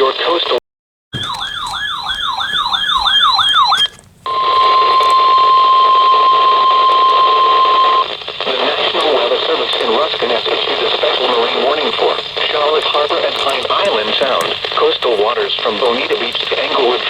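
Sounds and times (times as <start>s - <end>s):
radio static: 0.0s - 0.6s, 1.2s - 17.0s
warbling electronic alarm tone: 1.2s - 8.0s
steady alarm tone: 1.2s - 8.2s.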